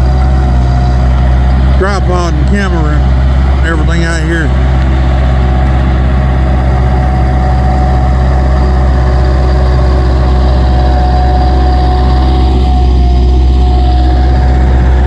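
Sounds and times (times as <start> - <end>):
diesel engines running: 0.0 - 15.0
thin steady whine: 0.0 - 15.0.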